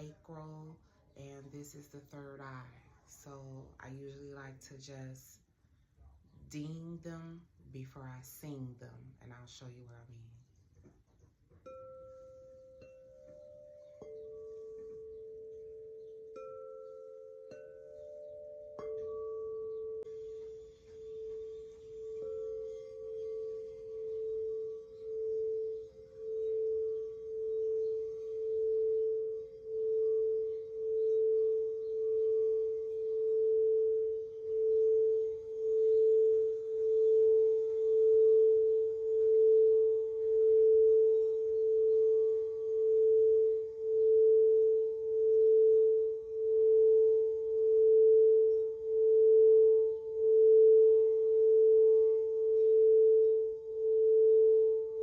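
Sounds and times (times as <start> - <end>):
singing bowl rim tone: 0.0 - 5.4, 11.6 - 55.0
singing bowl struck: 11.6 - 55.0.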